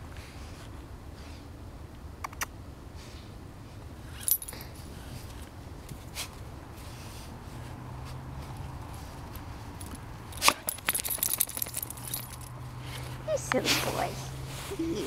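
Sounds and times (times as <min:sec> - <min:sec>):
metal dog tags jingling: 0:04.2 - 0:04.6, 0:09.8 - 0:12.6.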